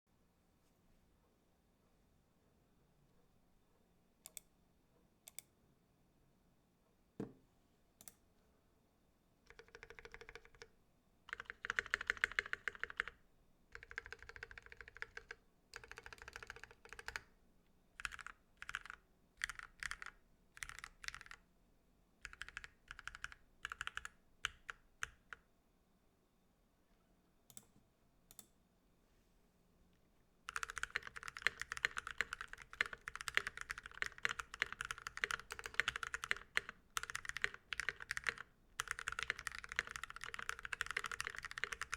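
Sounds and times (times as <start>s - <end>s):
typing on mechanical keyboard: 9.5s - 10.7s, 11.3s - 17.3s, 18.0s - 21.4s, 22.2s - 25.4s, 30.5s - 41.9s.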